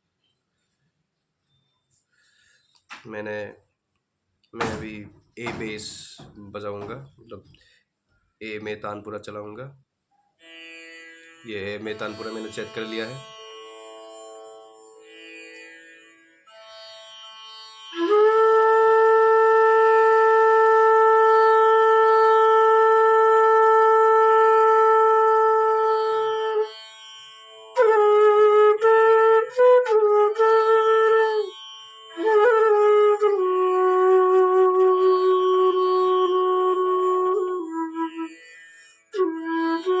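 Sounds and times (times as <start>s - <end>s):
bamboo flute: 17.9s - 26.8s, 27.7s - 40.0s.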